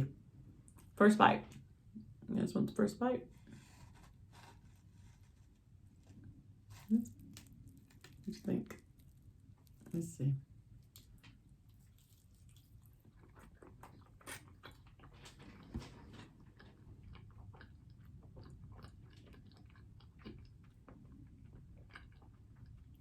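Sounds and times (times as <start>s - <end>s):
chewing food: 6.0s - 10.0s, 10.7s - 23.0s.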